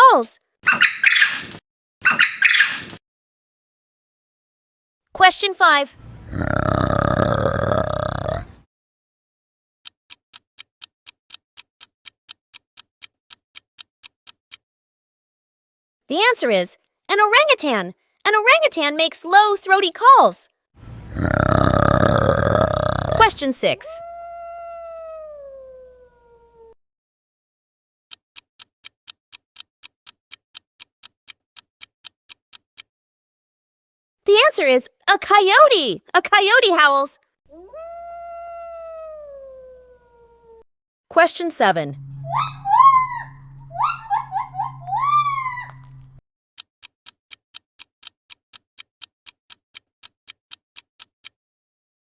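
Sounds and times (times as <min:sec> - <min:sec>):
countdown clock ticking: 0:09.8 - 0:14.6, 0:28.1 - 0:32.9, 0:41.6 - 0:51.4
coyote howling: 0:21.2 - 0:26.8, 0:37.5 - 0:40.6, 0:42.0 - 0:46.1
gibbon whooping call: 0:42.0 - 0:46.2.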